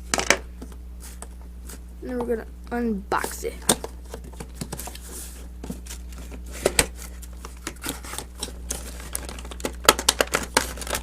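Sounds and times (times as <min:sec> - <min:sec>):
packaging clicks and crinkles: 0:05.8 - 0:11.0.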